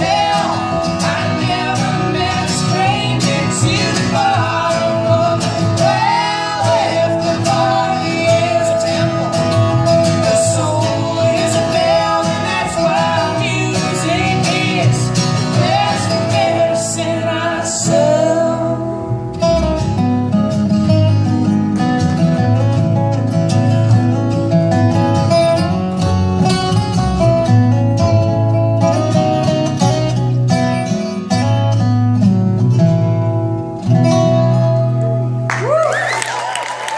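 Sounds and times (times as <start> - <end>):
person singing: 0.0 - 19.0
plucked guitar: 0.0 - 36.1
acoustic folk band playing: 0.0 - 36.9.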